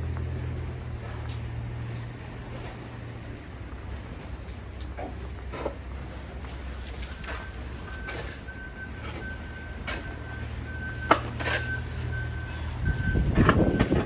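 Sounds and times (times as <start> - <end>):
low engine rumble: 0.0 - 14.0
electronic warning beeps: 6.9 - 14.0
wind buffeting microphone: 12.1 - 14.0.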